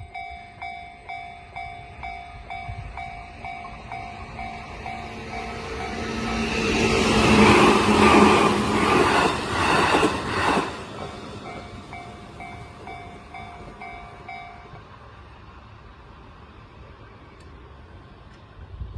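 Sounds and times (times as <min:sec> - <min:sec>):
level crossing warning bell: 0:00.0 - 0:07.3, 0:10.8 - 0:14.8
train passing: 0:00.0 - 0:18.9.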